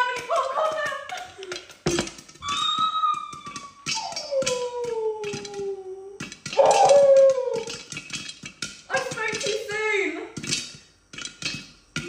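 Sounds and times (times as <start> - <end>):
popcorn kernels popping: 0.0 - 12.0
howling cries sliding down: 2.4 - 7.9.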